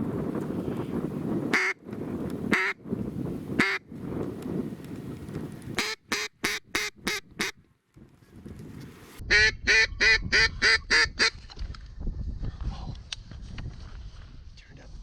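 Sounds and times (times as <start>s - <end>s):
duck quacking: 9.3s - 11.4s.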